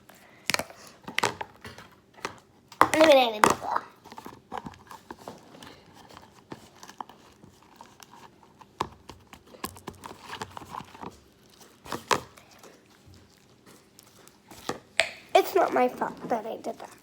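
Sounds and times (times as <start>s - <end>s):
containers clicking and tapping: 0.5s - 3.6s
packaging crinkling: 4.0s - 17.0s.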